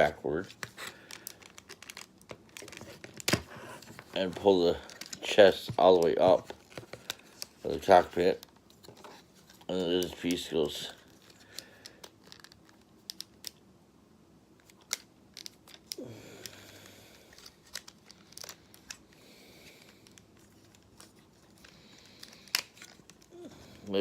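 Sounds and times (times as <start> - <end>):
plastic rubbing: 0.3 - 13.2.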